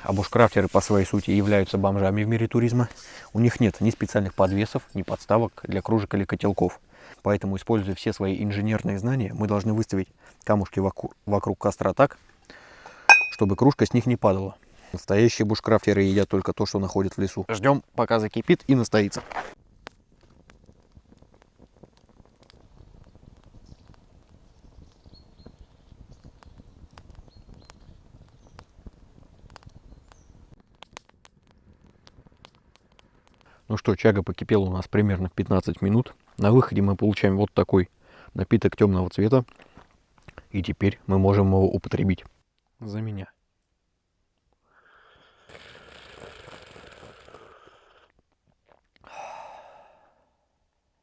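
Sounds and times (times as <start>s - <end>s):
campfire crackling: 0.0s - 8.4s, 19.2s - 36.4s
man slurping tea: 45.2s - 48.8s
man exhaling breathily: 49.0s - 50.5s.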